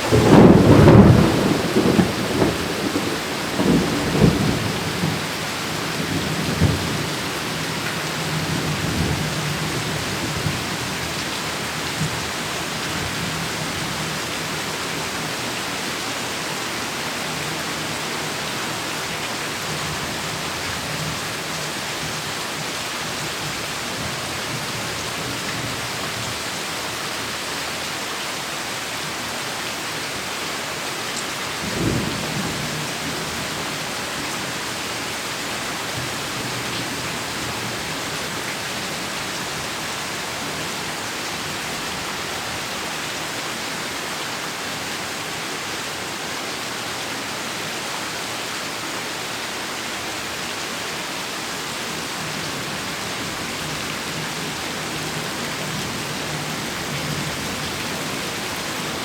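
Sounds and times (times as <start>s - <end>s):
thunder clap: 0.0s - 9.6s
heavy rain falling: 0.0s - 59.0s.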